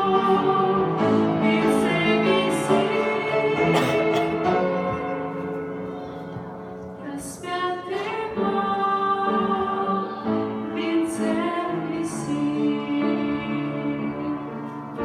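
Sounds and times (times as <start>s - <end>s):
women singing: 0.0s - 5.5s, 7.0s - 14.6s
instrumental accompaniment: 1.4s - 7.2s.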